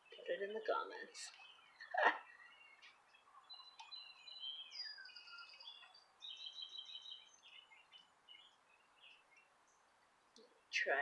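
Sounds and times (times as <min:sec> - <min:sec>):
songbird singing: 0:00.0 - 0:11.0.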